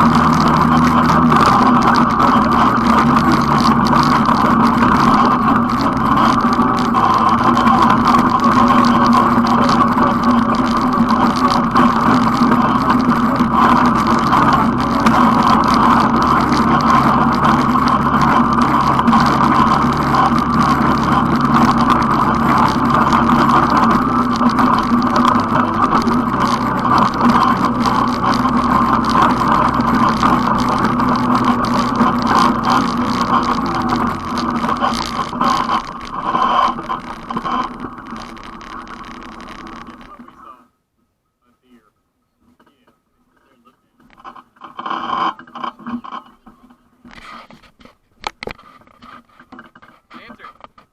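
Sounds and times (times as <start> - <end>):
atv engine running: 0.0 - 40.5.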